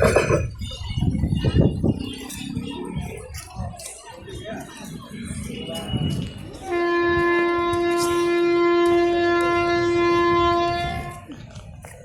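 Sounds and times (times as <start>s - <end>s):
locomotive horn blast: 6.6s - 11.3s.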